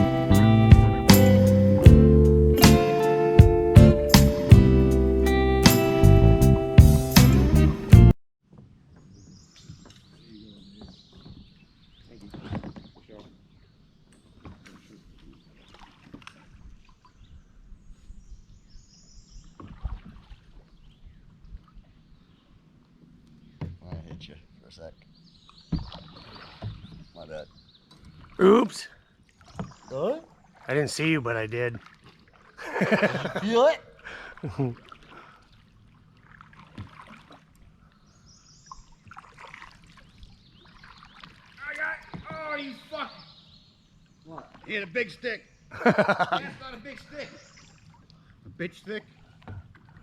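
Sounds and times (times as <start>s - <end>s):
soft knocks against hull: 8.4s - 11.6s, 12.2s - 13.4s, 14.3s - 16.6s, 19.6s - 20.6s, 23.6s - 24.4s, 25.6s - 27.2s, 29.4s - 29.9s, 31.7s - 32.5s, 36.3s - 37.4s, 40.7s - 42.5s, 49.4s - 50.0s
water sloshing against hull: 8.4s - 50.0s
knocks on kayak: 25.7s - 26.0s.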